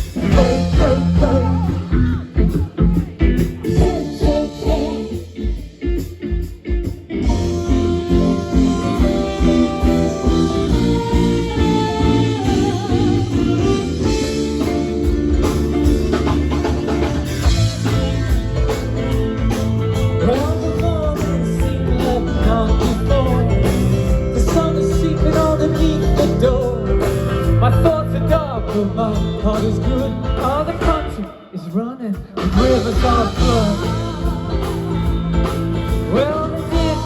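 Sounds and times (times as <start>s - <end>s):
live rock band playing: 0.0s - 37.0s
wavering melody line: 7.2s - 15.4s.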